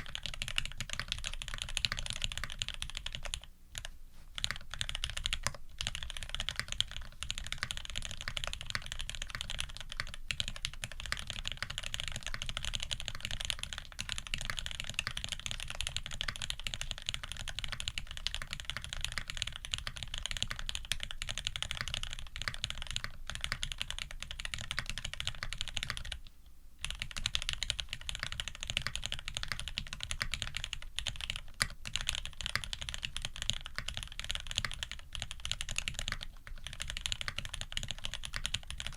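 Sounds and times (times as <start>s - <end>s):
fast mechanical keyboard typing: 0.0s - 26.2s, 26.8s - 38.9s.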